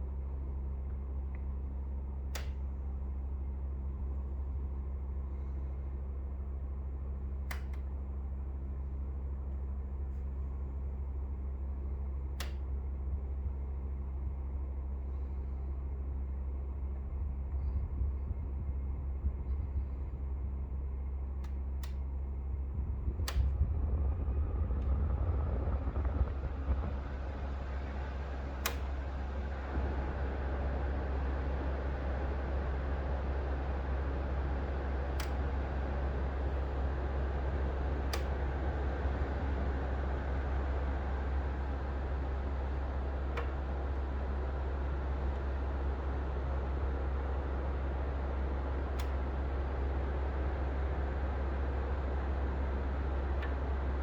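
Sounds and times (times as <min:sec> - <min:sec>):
air conditioner humming: 0:00.0 - 0:54.0
sharp clicks from unit: 0:02.3 - 0:02.7, 0:07.4 - 0:07.9, 0:12.4 - 0:12.7, 0:26.7 - 0:29.1, 0:35.0 - 0:35.6, 0:37.9 - 0:38.5, 0:42.6 - 0:44.2, 0:48.8 - 0:49.4
airflow rush: 0:22.8 - 0:35.3
sharp clicks: 0:28.6 - 0:29.0.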